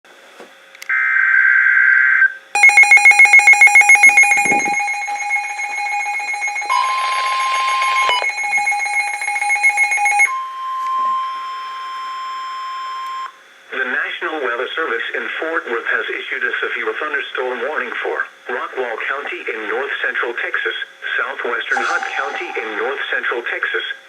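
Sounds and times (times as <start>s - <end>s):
digital data burst: 2.6s - 8.3s, 21.7s - 23.3s
second steady tone: 2.6s - 8.7s, 21.7s - 23.3s
electronic alert tone: 2.6s - 10.3s, 21.7s - 23.2s.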